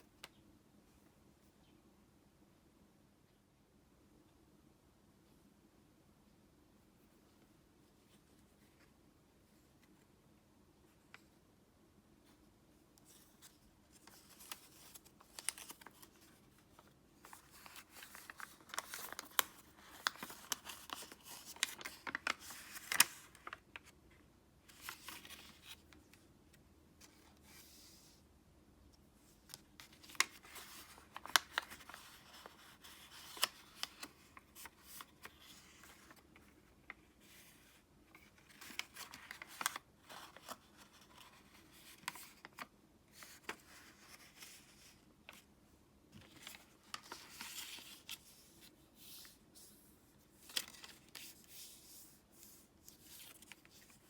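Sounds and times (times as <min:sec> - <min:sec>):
paper crinkling and creasing: 0:13.0 - 0:26.3, 0:29.2 - 0:45.5, 0:46.1 - 0:54.0.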